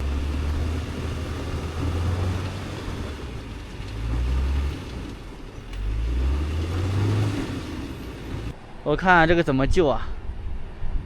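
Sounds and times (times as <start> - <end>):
car engine revving: 0.0 - 8.6.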